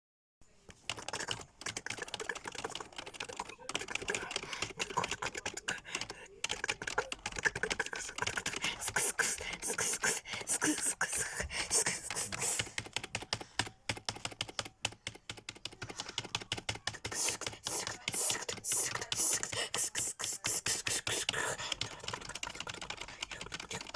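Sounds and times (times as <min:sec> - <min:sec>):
typing on computer keyboard: 0:00.7 - 0:23.9.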